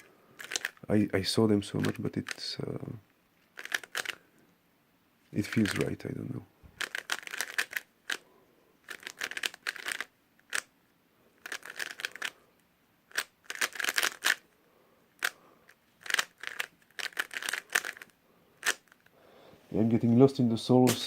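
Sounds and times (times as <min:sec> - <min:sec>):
puzzle cube plastic clicking: 0:00.0 - 0:00.8, 0:01.8 - 0:02.4, 0:03.4 - 0:04.2, 0:05.5 - 0:05.9, 0:06.8 - 0:08.2, 0:08.8 - 0:10.7, 0:11.4 - 0:14.4, 0:15.2 - 0:19.1.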